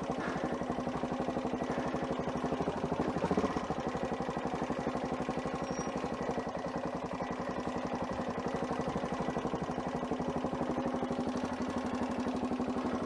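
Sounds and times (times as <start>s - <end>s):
motorcycle engine running: 0.0s - 13.0s.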